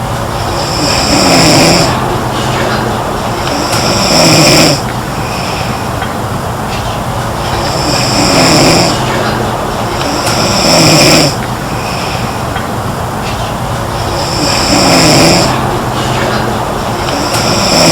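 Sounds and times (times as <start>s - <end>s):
background hiss: 0.0s - 17.9s
girl snoring: 0.6s - 2.0s, 3.4s - 4.8s, 7.6s - 9.0s, 10.0s - 11.4s, 14.2s - 15.5s, 17.1s - 17.9s.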